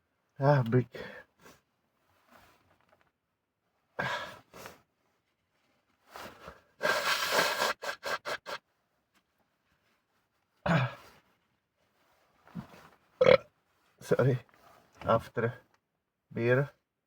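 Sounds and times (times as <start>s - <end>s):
man sneezing: 6.8s - 8.6s, 10.7s - 11.1s
sharp breaths: 6.8s - 8.6s.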